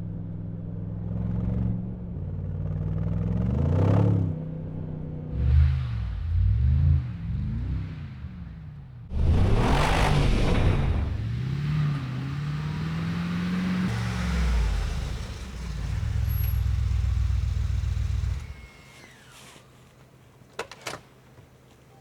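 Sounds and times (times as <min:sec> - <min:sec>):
car engine running under load: 0:05.4 - 0:20.2.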